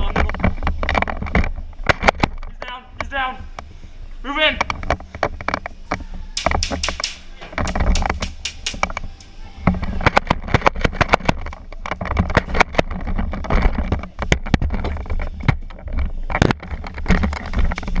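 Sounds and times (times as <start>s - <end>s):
airsoft gunfire cracks: 6.4s - 8.9s.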